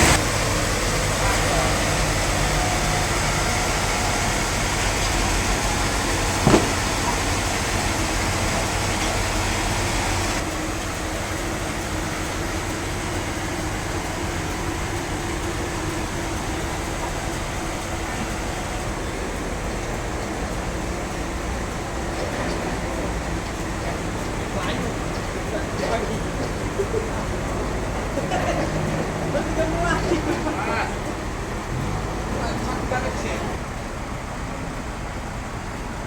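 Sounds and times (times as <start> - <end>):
sawmill machinery running: 0.0 - 36.0
sharp knock: 6.4 - 7.1.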